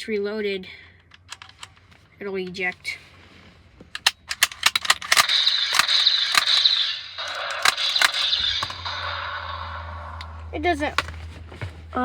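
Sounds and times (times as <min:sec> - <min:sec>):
toy gun trigger clicks: 0:04.0 - 0:08.8
electronic gunfire sound effect: 0:05.1 - 0:09.8.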